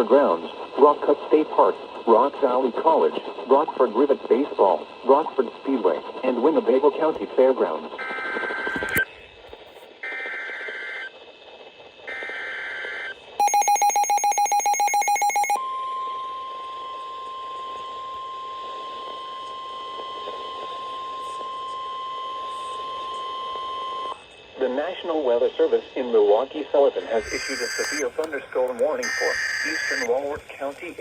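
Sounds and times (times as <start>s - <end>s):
steady warning alarm tone: 12.1s - 24.4s, 27.0s - 30.3s
digital data bursts: 27.1s - 31.0s.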